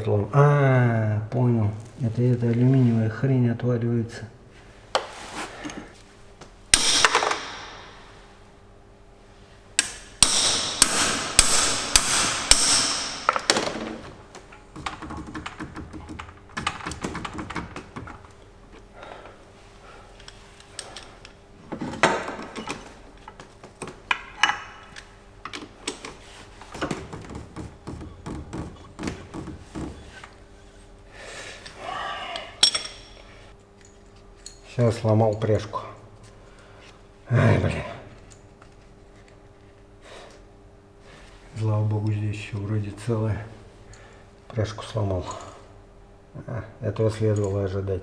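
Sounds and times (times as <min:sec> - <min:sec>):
hammer striking metal spanner: 0:06.7 - 0:08.2, 0:09.8 - 0:13.9, 0:32.6 - 0:33.3.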